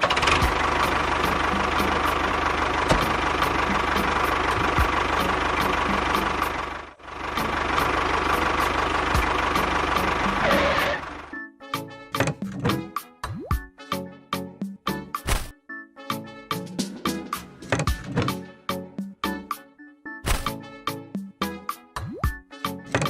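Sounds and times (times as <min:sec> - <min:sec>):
engine idling with knocking tick: 0:00.0 - 0:11.3.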